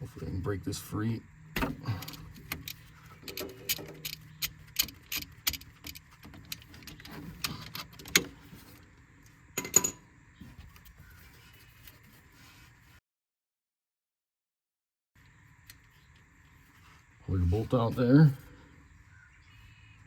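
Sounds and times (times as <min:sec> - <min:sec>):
metallic clicks and clinks: 0:02.0 - 0:08.2.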